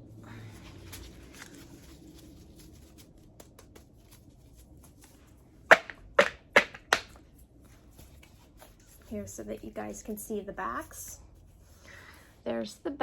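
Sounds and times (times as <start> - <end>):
cards rustling: 0.5 - 7.2
card taps: 5.7 - 7.2.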